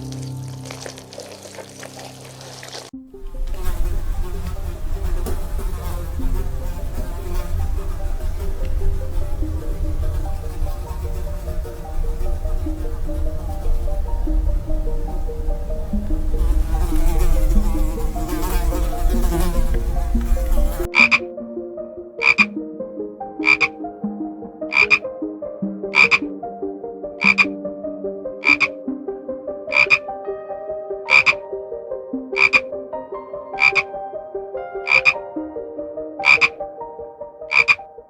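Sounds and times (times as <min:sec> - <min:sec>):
frog croaking: 0:00.0 - 0:21.3, 0:22.2 - 0:22.6, 0:23.4 - 0:23.8, 0:24.6 - 0:25.1, 0:25.9 - 0:26.4, 0:27.2 - 0:27.6, 0:28.4 - 0:28.8, 0:29.7 - 0:30.1, 0:31.0 - 0:31.5, 0:32.3 - 0:32.8, 0:33.5 - 0:34.0, 0:34.8 - 0:35.3, 0:36.2 - 0:36.6, 0:37.4 - 0:38.0.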